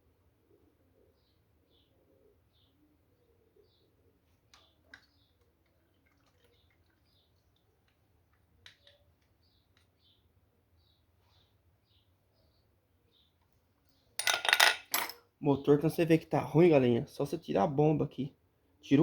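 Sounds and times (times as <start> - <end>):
faint bird chirps: 0.5 - 7.5.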